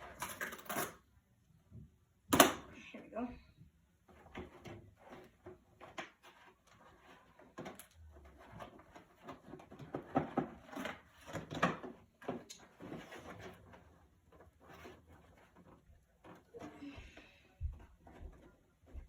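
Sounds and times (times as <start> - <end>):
packaging rustling and scraping: 4.2 - 16.9.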